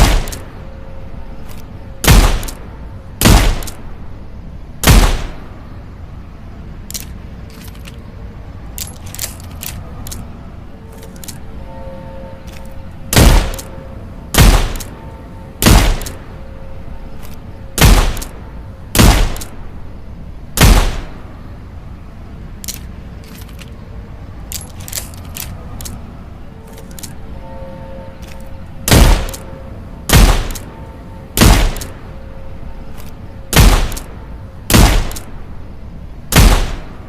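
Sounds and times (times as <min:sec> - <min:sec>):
revolver gunshots: 0:00.0 - 0:00.4, 0:02.0 - 0:02.6, 0:03.2 - 0:03.8, 0:04.8 - 0:05.4, 0:13.1 - 0:13.7, 0:14.4 - 0:14.9, 0:15.6 - 0:16.2, 0:17.8 - 0:18.3, 0:19.0 - 0:19.6, 0:20.6 - 0:21.2, 0:28.9 - 0:29.4, 0:30.1 - 0:30.7, 0:31.4 - 0:32.0, 0:33.5 - 0:34.1, 0:34.7 - 0:35.3, 0:36.3 - 0:37.0.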